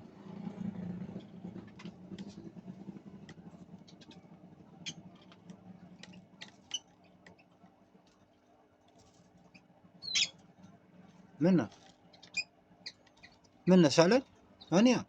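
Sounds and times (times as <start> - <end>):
steady low hum: 0.0 - 15.0
lovebirds chirping: 9.5 - 10.4.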